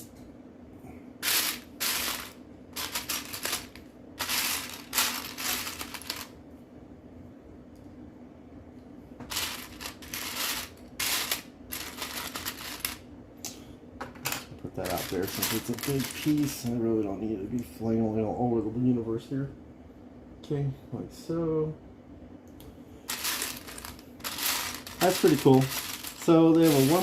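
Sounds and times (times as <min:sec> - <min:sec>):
steady low hum: 0:00.0 - 0:27.0
plastic pieces clattering: 0:01.2 - 0:06.3, 0:09.3 - 0:13.0, 0:14.2 - 0:16.7, 0:23.1 - 0:27.0.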